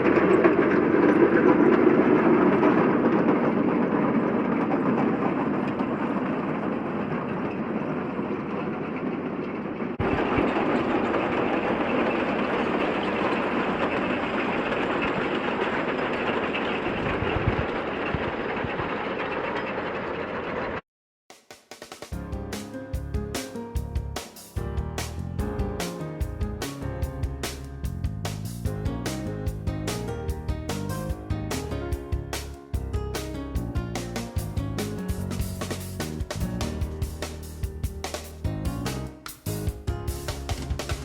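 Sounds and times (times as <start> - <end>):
harvester machinery clattering: 0.0 - 20.8.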